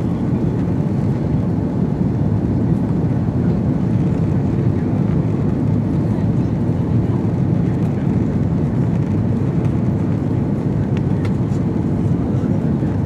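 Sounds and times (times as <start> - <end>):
airliner cabin engine rumble: 0.0 - 13.0.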